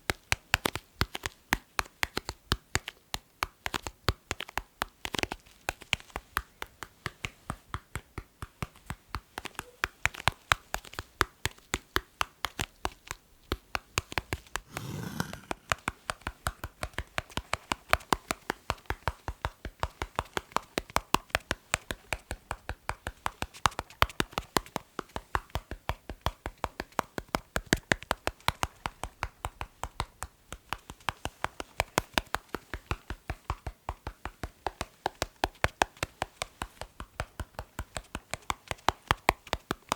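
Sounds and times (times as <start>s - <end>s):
short rubbing sound: 14.7s - 15.7s.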